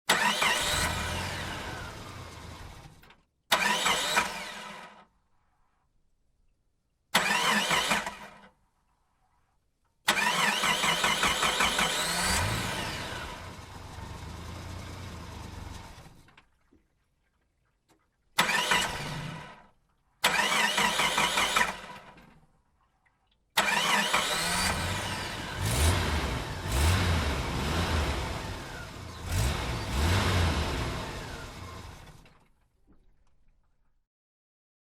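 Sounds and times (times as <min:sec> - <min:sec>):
car engines starting: 0:00.0 - 0:05.0, 0:07.2 - 0:08.5, 0:10.1 - 0:16.6, 0:18.4 - 0:22.4, 0:23.6 - 0:32.6
car engine revving: 0:00.2 - 0:02.9, 0:10.2 - 0:16.1, 0:23.6 - 0:32.2.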